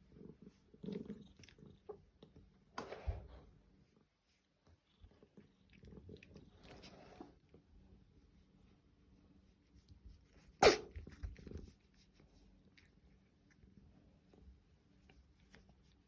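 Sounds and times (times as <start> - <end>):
cat sneezing: 10.5 - 11.1.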